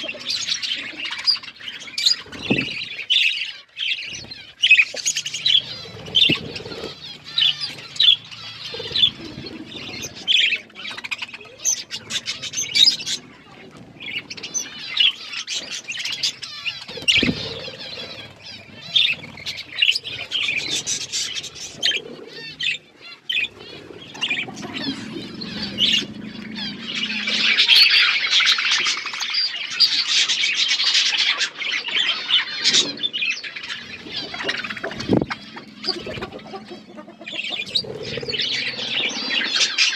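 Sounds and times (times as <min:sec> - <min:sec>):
budgerigars chirping: 0:00.0 - 0:39.9
dull thumps: 0:02.3 - 0:02.8.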